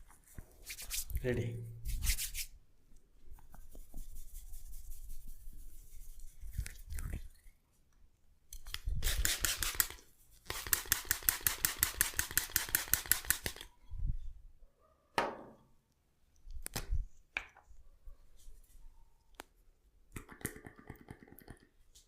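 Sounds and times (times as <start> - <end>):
hands rubbing hair and scalp: 0.0 - 1.2, 1.8 - 2.6, 3.3 - 7.1, 8.7 - 13.7.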